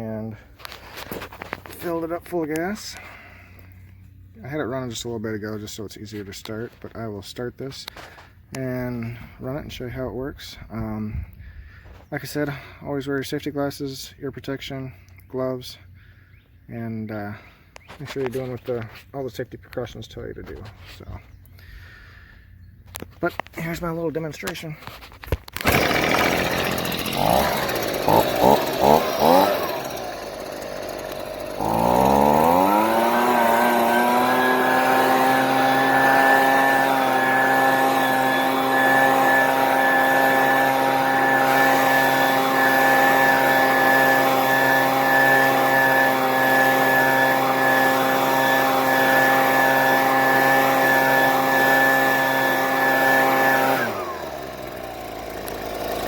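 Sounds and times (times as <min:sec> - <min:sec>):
leaf blower engine revving: 0:00.1 - 0:09.8, 0:21.6 - 0:56.0.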